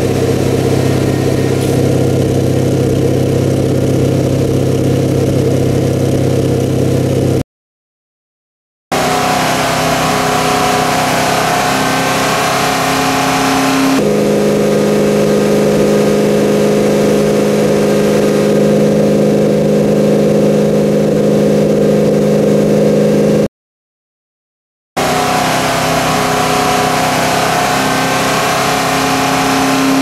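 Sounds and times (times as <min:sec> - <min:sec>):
vehicle exhaust engine running: 0:00.0 - 0:07.4, 0:08.9 - 0:23.5, 0:25.0 - 0:30.0.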